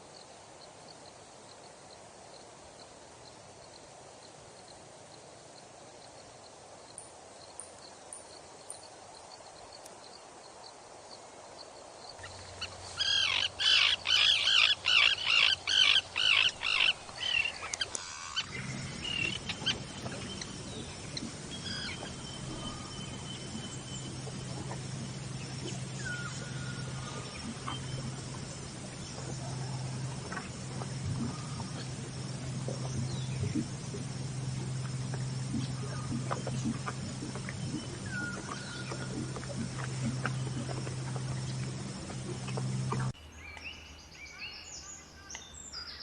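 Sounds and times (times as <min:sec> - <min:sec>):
bird calling loudly: 0:12.2 - 0:23.8
low hum: 0:12.2 - 0:43.2.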